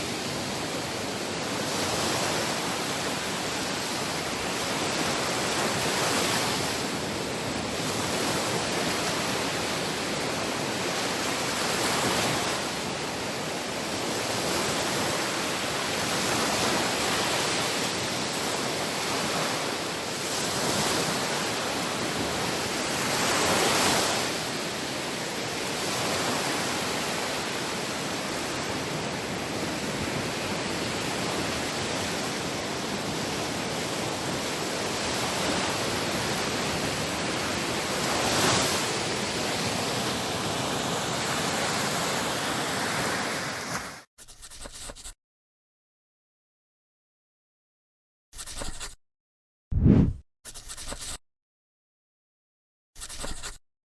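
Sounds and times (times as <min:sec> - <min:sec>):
sea waves breaking: 0:35.0 - 0:44.0.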